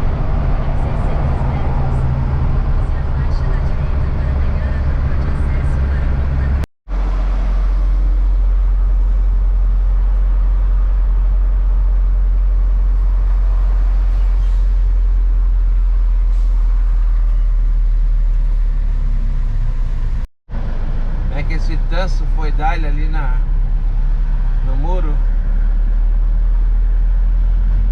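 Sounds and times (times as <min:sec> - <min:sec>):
truck engine and road rumble: 0:00.0 - 0:27.9.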